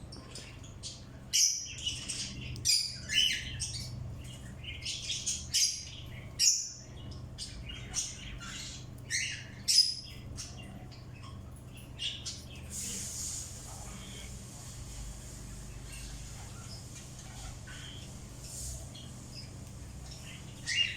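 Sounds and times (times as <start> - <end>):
birds chirping: 0.0 - 20.9
steady hiss: 12.7 - 15.8.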